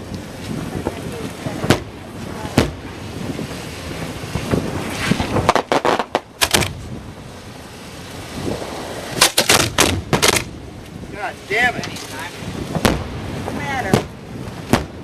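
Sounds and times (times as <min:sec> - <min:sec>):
fireworks bangs: 0:00.4 - 0:07.0, 0:08.5 - 0:10.6, 0:11.6 - 0:15.0.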